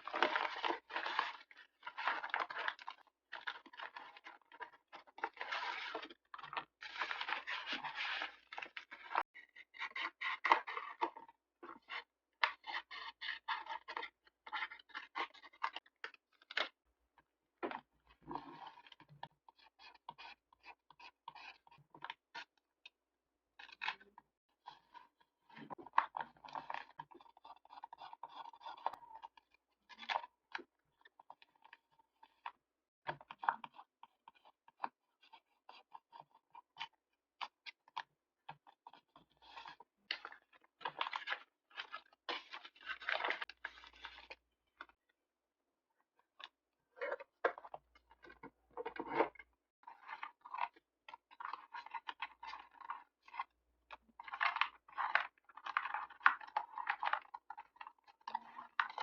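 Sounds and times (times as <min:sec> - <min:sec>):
paper crinkling and rustling: 0:00.0 - 0:16.8, 0:39.2 - 0:44.4, 0:50.0 - 0:59.0.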